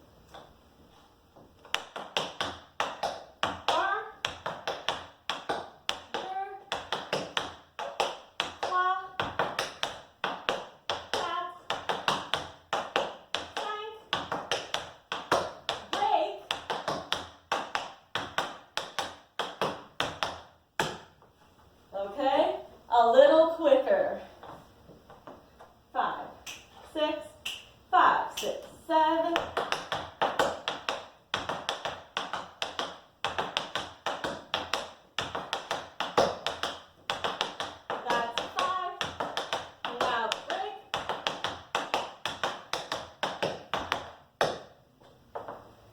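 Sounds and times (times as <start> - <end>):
tap shoes clicking on floor: 1.4 - 21.3, 29.2 - 45.7.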